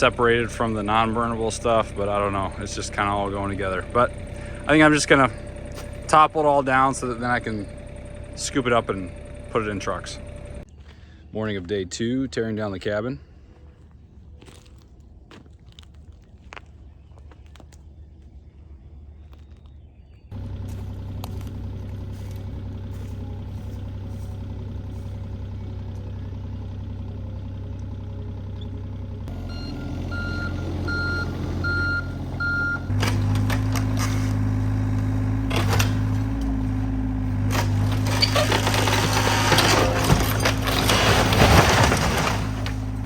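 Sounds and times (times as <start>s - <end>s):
backup alarm beeping: 0.0s - 10.6s, 29.3s - 33.0s
heavy machine engine running: 0.0s - 10.7s, 20.3s - 43.0s
timbers cracking and breaking: 32.9s - 43.0s.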